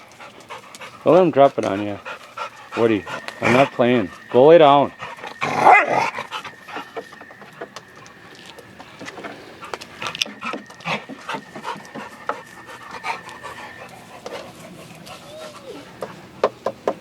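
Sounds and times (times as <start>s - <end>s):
dog panting: 0.0s - 16.7s.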